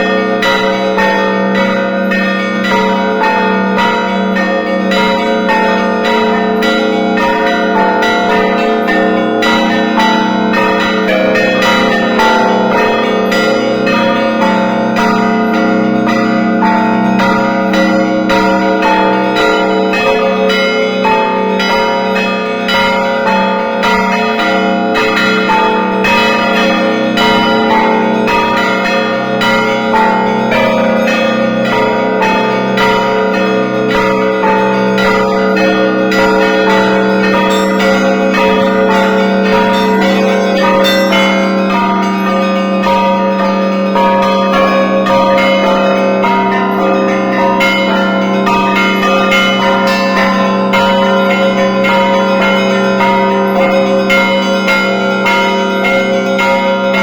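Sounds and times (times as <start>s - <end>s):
large bass bells ringing: 0.0s - 57.0s
small bells struck fast: 36.2s - 46.4s.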